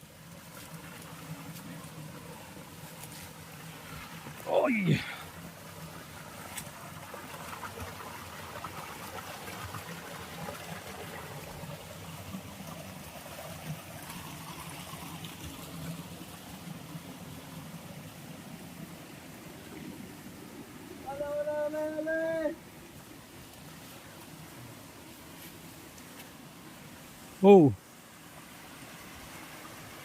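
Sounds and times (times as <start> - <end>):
stream and waterfall running: 0.0 - 30.0.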